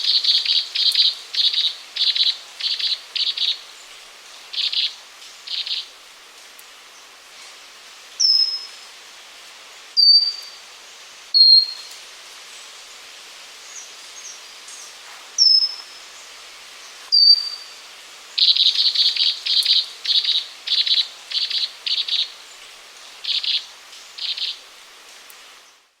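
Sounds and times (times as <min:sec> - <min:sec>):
bird whistling high notes: 0:10.0 - 0:10.5, 0:11.4 - 0:11.9, 0:17.1 - 0:17.7.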